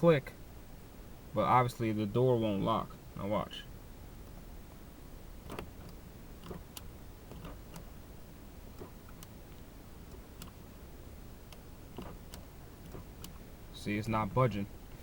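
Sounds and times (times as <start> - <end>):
lock switch clicks: 8.7 - 9.4, 10.0 - 10.6, 11.5 - 13.4.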